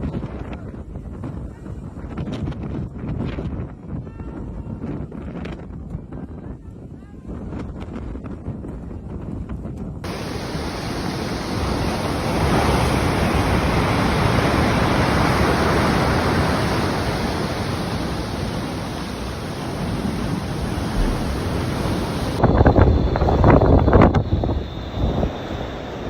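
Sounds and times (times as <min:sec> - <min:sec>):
low rumbling noise: 0:10.1 - 0:26.0
storm rushing noise: 0:10.1 - 0:26.0.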